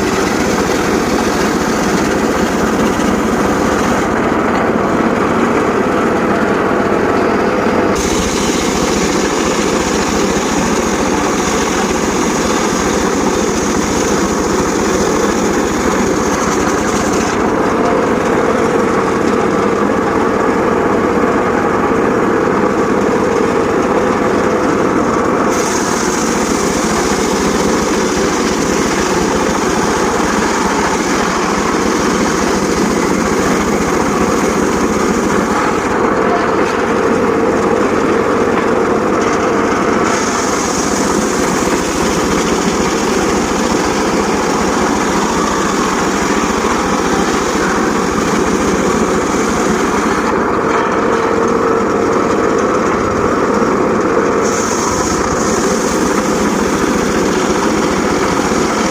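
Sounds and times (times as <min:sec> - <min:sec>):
circular saw cutting wood: 0:00.0 - 0:21.0, 0:22.4 - 0:58.9
steady whine: 0:00.0 - 0:58.9
high hiss: 0:08.0 - 0:17.2, 0:25.5 - 0:35.6.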